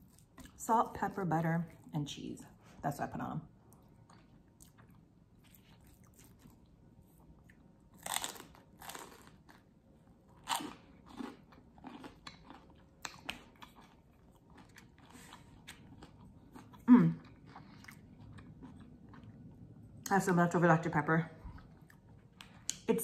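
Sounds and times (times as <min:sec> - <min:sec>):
crunching food: 0:03.7 - 0:19.6.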